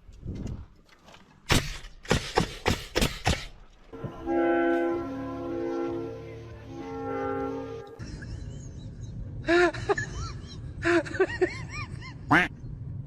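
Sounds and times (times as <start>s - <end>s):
sharp knocks: 1.5s - 3.9s
horn-like music chords: 4.0s - 8.0s.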